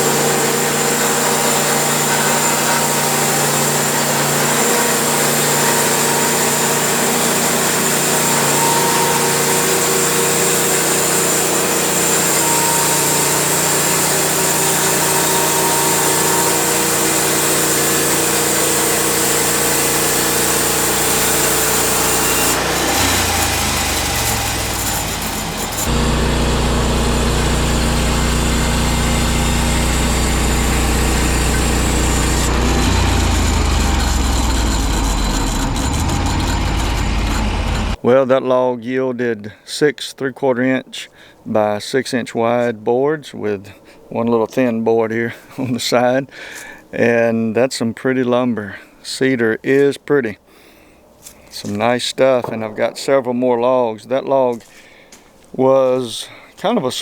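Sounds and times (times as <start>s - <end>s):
saw cutting through log: 0.0s - 38.0s
sawmill engine running: 0.0s - 38.0s.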